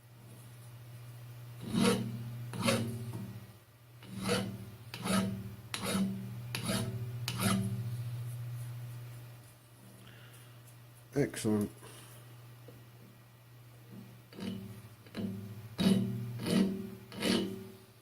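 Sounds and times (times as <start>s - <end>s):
steel rasping on spinning work: 1.6s - 3.0s, 4.0s - 7.9s, 14.4s - 17.8s.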